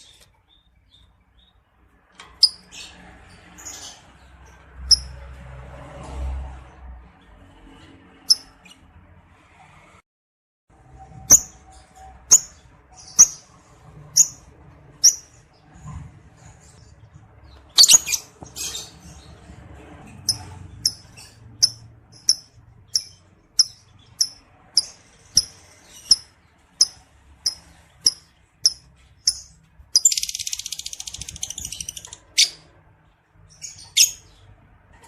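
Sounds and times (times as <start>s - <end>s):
lovebird chirping: 4.9s - 5.1s, 11.2s - 13.5s, 14.1s - 15.4s, 17.5s - 19.3s, 20.3s - 32.6s, 33.6s - 34.4s.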